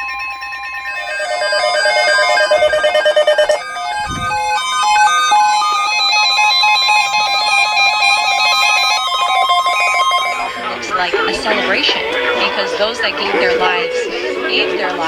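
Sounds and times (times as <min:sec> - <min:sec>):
instrumental music with held notes: 0:00.0 - 0:15.0.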